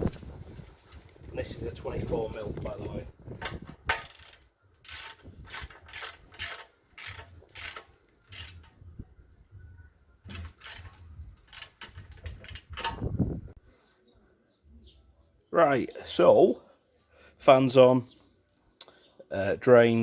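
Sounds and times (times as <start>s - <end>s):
ratchet wrench clicking: 3.9s - 8.8s, 10.3s - 13.0s.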